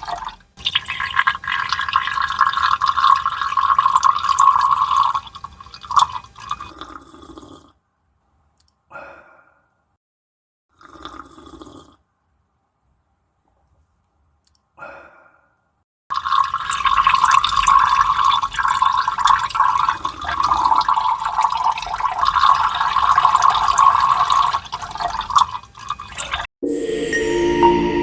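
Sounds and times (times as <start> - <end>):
liquid pouring into a glass: 0.0 - 6.7, 16.1 - 26.5.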